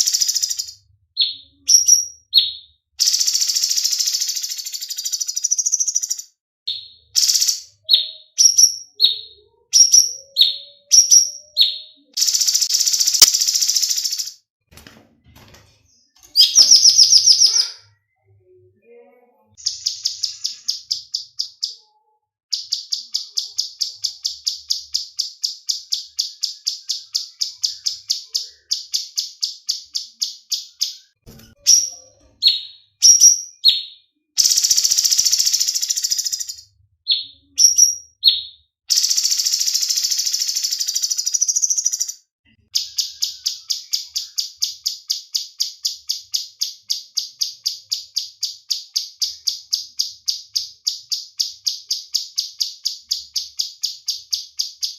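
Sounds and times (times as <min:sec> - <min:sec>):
songbird chirping and trilling: 0:00.0 - 0:14.4, 0:15.8 - 0:54.9.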